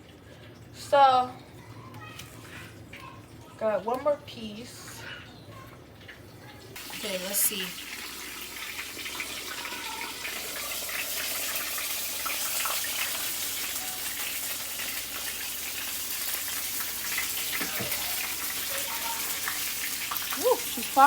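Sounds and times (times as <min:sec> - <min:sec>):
oil crackling: 0:04.6 - 0:21.0
chicken sizzling in hot oil: 0:06.8 - 0:21.0.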